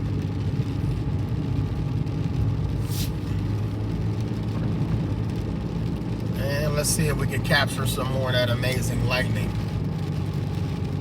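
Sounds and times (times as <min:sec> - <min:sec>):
car engine and tyres rumble: 0:00.0 - 0:11.0
brief hiss: 0:02.8 - 0:03.3.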